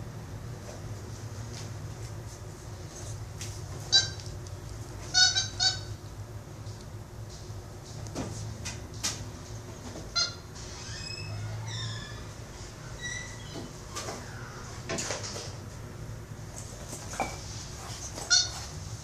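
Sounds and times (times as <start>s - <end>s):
monkey squealing and chirping: 10.2s - 13.6s.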